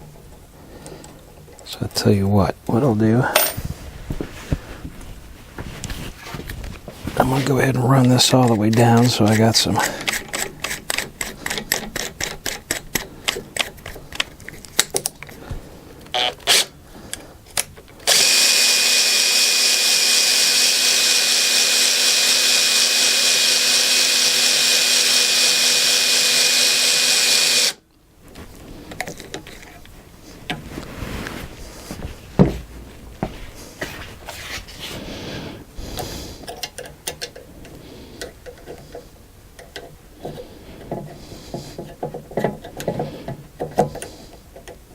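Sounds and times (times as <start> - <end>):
power drill running: 16.1 - 16.7, 18.0 - 27.8.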